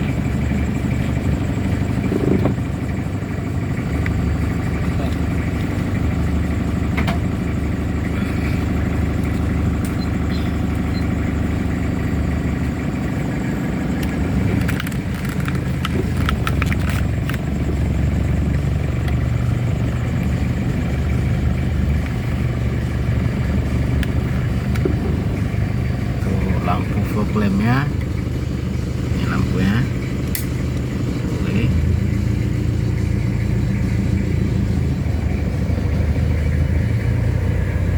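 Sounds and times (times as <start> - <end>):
diesel engine idling: 0.0 - 37.9.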